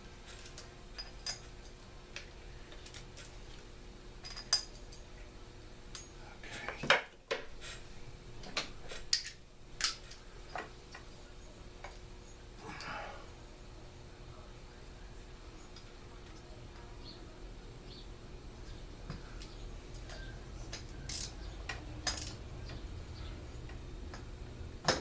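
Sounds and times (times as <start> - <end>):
metal tools clicking and clinking: 0.3 - 1.5, 4.2 - 5.0, 20.0 - 22.8.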